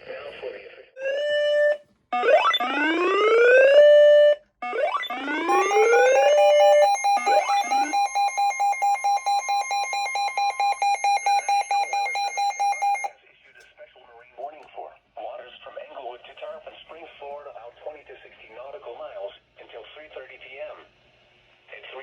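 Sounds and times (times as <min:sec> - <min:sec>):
electronic weather alert tone: 0:04.8 - 0:13.1.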